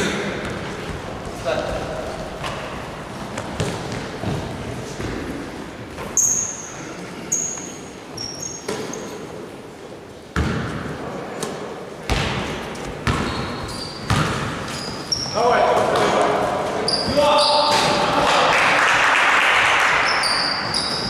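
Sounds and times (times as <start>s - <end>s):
sneakers squeaking: 0.3s - 9.5s, 10.3s - 10.9s, 12.0s - 18.2s, 19.8s - 21.0s
basketballs bouncing on gym floor: 0.4s - 5.4s, 10.4s - 10.9s, 12.0s - 18.1s, 20.0s - 21.0s.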